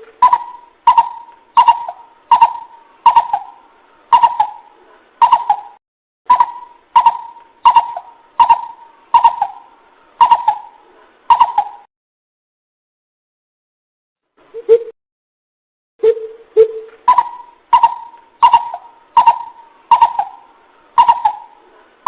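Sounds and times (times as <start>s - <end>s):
bird call hollow hoots: 0.0s - 11.9s, 16.0s - 21.6s.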